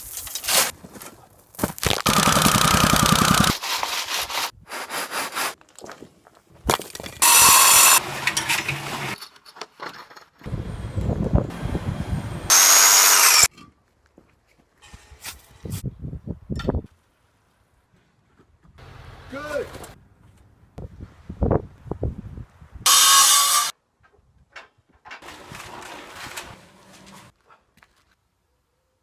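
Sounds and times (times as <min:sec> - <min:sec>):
power tool cutting and scraping: 0:01.9 - 0:04.5, 0:07.2 - 0:09.2, 0:12.5 - 0:13.5, 0:22.9 - 0:23.7.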